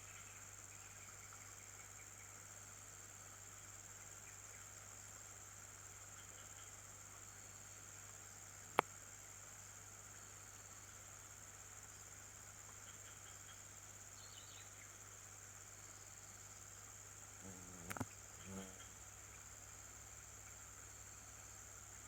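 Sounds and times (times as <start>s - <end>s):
high-pitched insect drone: 17.4s - 19.1s
sharp click: 17.8s - 18.1s.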